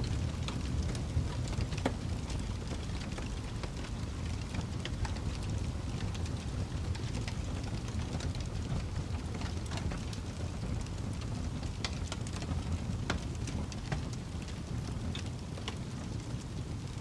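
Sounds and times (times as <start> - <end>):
low fire rumble: 0.0 - 17.0
wood fire crackling: 0.0 - 17.0.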